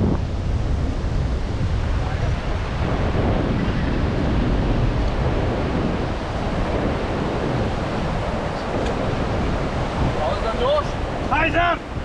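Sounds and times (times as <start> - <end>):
whitewater rushing: 0.0 - 12.0
wind buffeting microphone: 0.0 - 12.0.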